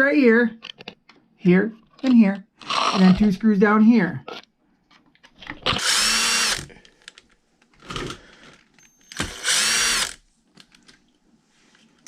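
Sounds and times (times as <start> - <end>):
electric drill-driver running: 5.7 - 6.7, 9.1 - 10.2.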